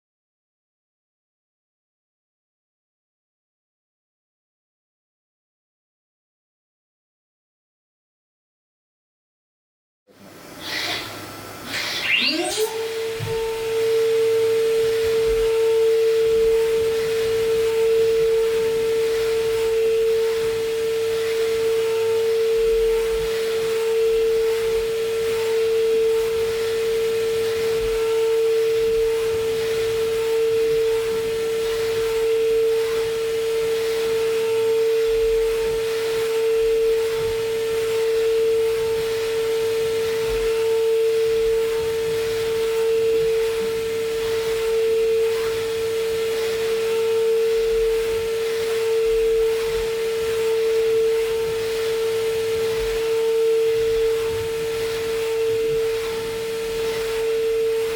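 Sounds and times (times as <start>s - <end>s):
milling machine cutting whine: 10.2s - 57.9s
hiss of cutting: 10.6s - 13.6s.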